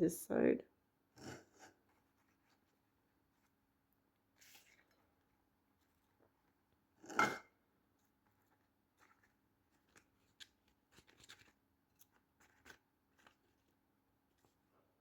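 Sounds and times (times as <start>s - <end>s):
scrape in potting mix: 4.4s - 5.0s.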